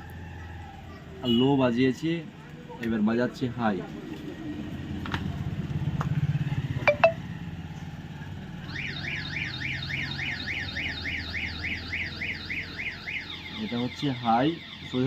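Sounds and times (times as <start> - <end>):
warbling electronic alarm: 6.9 - 7.3, 8.7 - 15.0.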